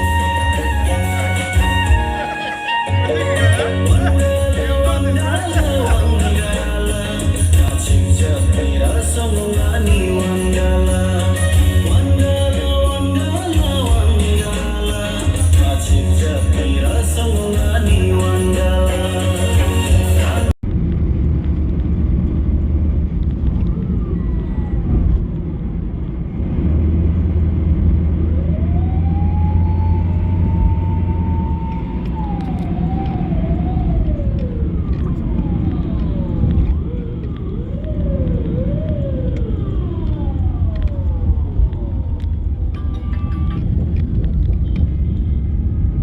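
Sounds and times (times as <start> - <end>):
siren wailing: 0.0 - 6.9, 23.5 - 25.9, 28.1 - 44.2
road traffic rumble: 0.0 - 46.0.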